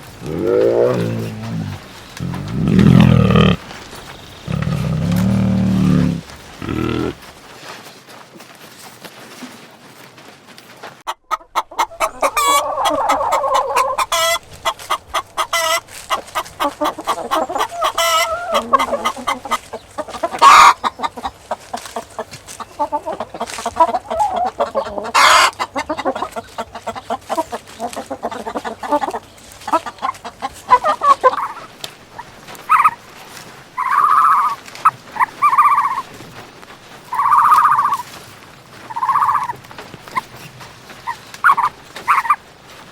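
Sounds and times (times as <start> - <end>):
chickens clucking: 0.0 - 7.4, 11.0 - 42.9
short chicken calls: 0.2 - 3.7, 4.4 - 7.2, 11.1 - 21.0, 37.1 - 38.1, 38.9 - 40.2.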